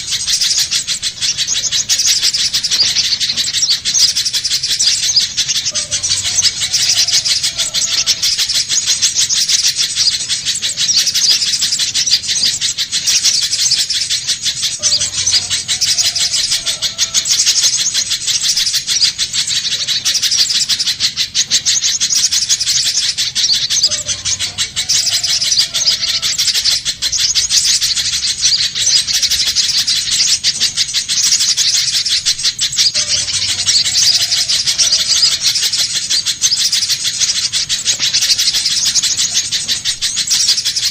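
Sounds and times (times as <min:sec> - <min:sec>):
bird call rapid chipping notes: 0:00.0 - 0:40.9.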